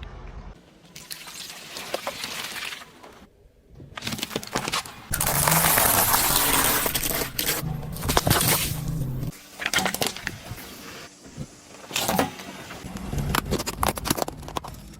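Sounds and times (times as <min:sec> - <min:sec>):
objects crushed under car tyre: 0:04.0 - 0:09.2.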